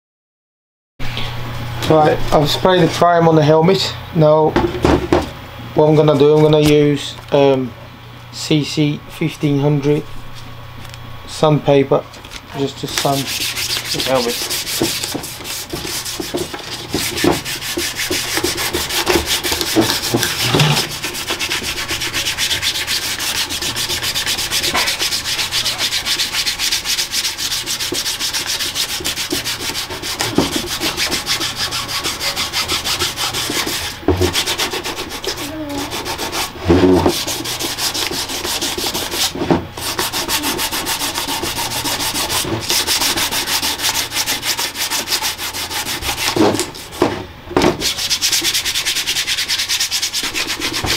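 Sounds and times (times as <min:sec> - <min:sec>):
sandpaper rubbing: 0:12.8 - 0:47.0, 0:47.8 - 0:50.9.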